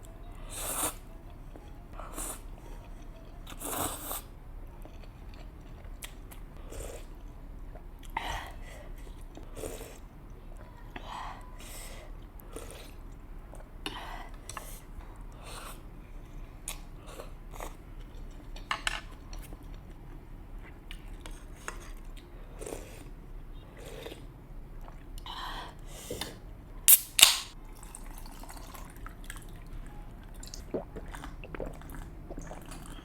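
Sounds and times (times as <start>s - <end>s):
chewing and biting noodles: 30.3s - 33.0s.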